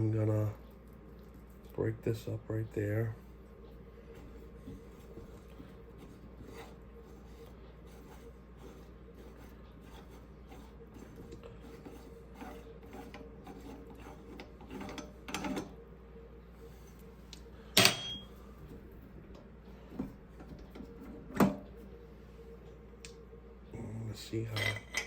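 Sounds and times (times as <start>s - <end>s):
steady low hum: 0.0s - 25.0s
metal scrape: 6.0s - 15.7s.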